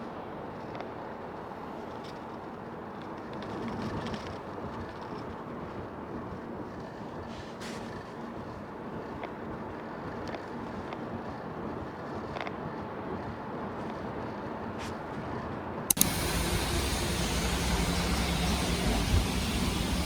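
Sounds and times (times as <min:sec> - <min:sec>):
car road and engine noise: 0:00.1 - 0:20.0
sharp click: 0:15.9 - 0:19.4
steady low hum: 0:15.9 - 0:20.0.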